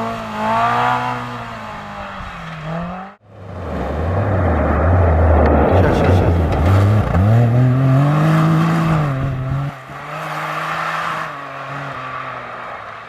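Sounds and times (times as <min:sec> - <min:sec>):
quieter engine running: 0:00.0 - 0:09.8
car engine revving: 0:00.0 - 0:13.0.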